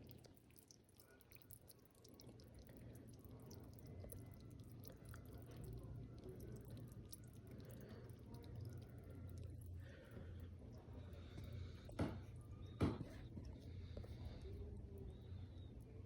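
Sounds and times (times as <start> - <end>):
fish clicking and popping: 0.0 - 14.4.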